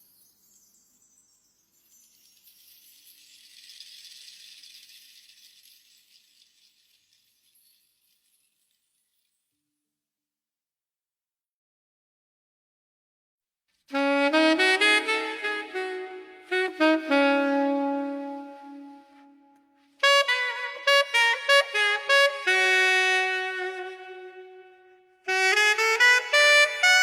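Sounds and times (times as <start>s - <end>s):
horns playing held notes: 13.9s - 19.2s, 20.0s - 27.0s.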